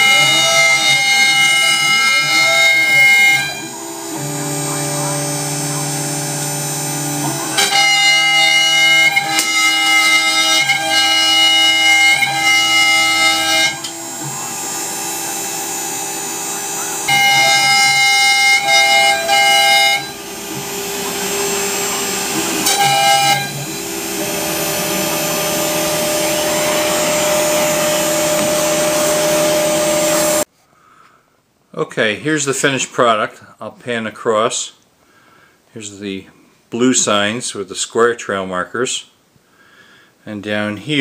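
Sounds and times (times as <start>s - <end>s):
router machine whine: 0.0s - 30.5s.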